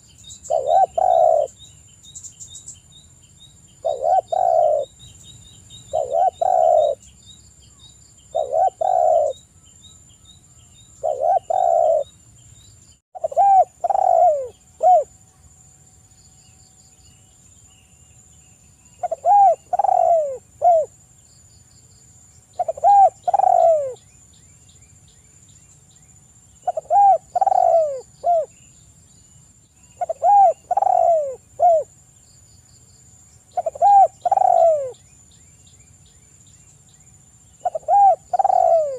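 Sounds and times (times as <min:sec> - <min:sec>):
faint small bird chirps: 0:00.0 - 0:38.9
high insect drone: 0:00.0 - 0:38.9
dove cooing: 0:00.5 - 0:01.6, 0:03.8 - 0:05.0, 0:05.9 - 0:07.0, 0:08.3 - 0:09.4, 0:11.0 - 0:12.1, 0:13.2 - 0:15.2, 0:19.0 - 0:20.9, 0:22.6 - 0:24.0, 0:26.6 - 0:28.5, 0:30.0 - 0:31.9, 0:33.5 - 0:35.0, 0:37.6 - 0:38.9.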